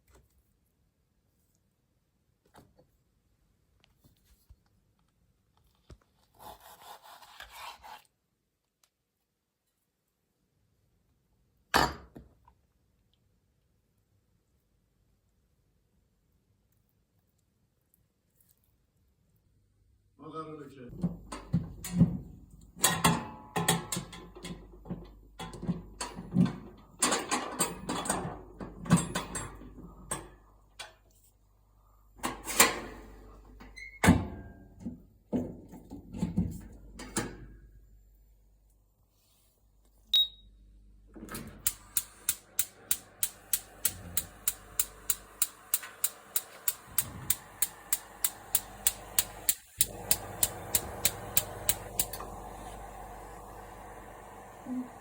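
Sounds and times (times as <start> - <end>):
short high beep: 40.1 - 40.5.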